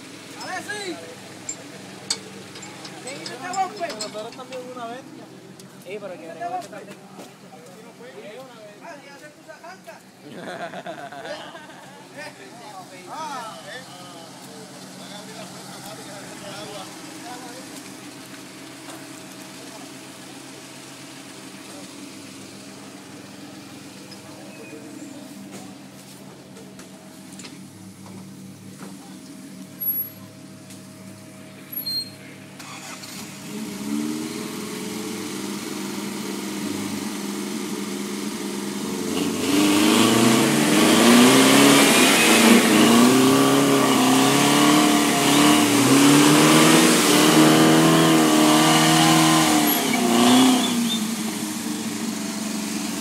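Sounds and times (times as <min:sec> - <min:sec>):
engine revving hard: 0:32.6 - 0:53.0.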